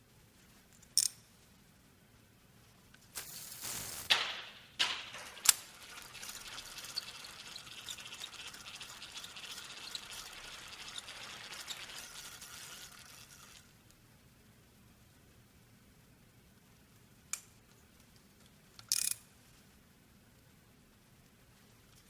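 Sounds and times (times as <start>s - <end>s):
fishing reel clicks: 5.4s - 13.5s
reel whirring and ticking: 5.4s - 13.7s.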